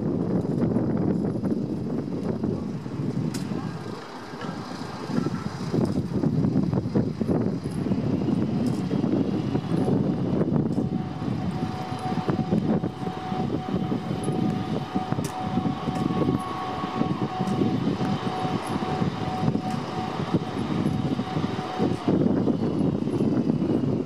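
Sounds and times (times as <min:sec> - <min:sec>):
train wheels rumbling on rails: 0:00.0 - 0:24.0
high-pitched squeal: 0:07.4 - 0:24.0
higher tone: 0:08.6 - 0:23.3.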